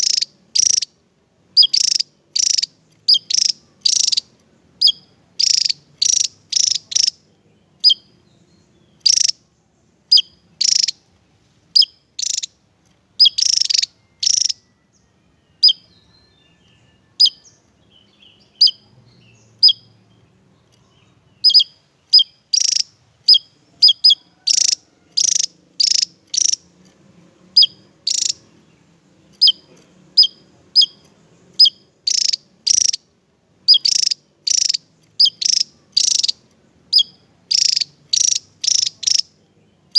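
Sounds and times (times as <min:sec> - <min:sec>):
bird singing short high notes: 0:13.2 - 0:20.0.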